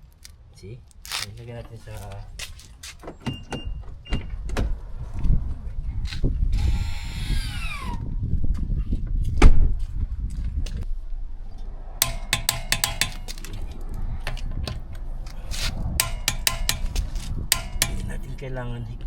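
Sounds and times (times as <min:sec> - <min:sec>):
sharp knock: 0:12.0 - 0:13.5, 0:16.0 - 0:18.2
ringing metallic clinks: 0:12.0 - 0:13.6, 0:16.0 - 0:18.2
wrench and socket clinking: 0:12.0 - 0:13.6, 0:16.0 - 0:18.2.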